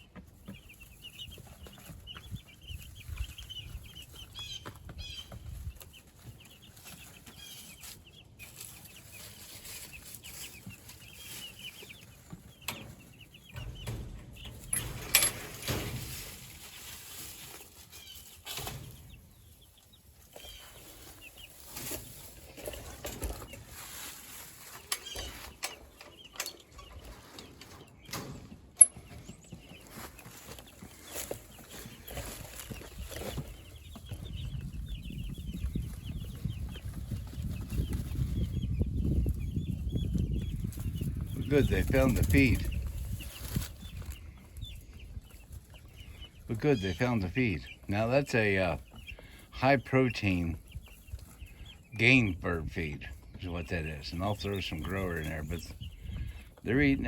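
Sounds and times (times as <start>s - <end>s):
chickens cheeping and clucking: 0.0s - 57.0s.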